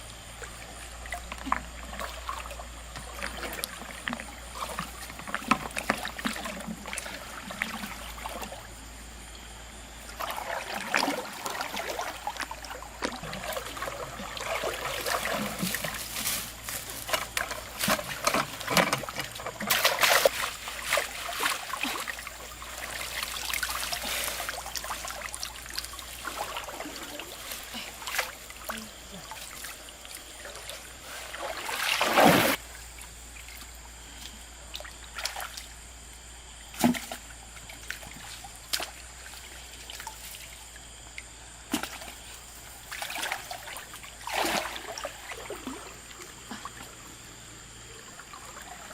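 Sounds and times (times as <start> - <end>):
river water splashing: 0.0 - 48.9.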